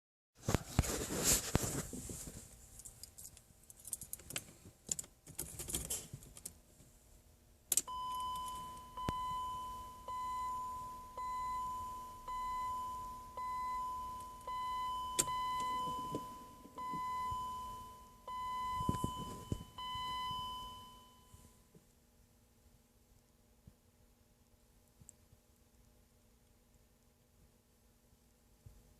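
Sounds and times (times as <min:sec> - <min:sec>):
car keys jangling: 0:02.7 - 0:06.6, 0:07.7 - 0:08.9
car warning chime: 0:07.7 - 0:21.6.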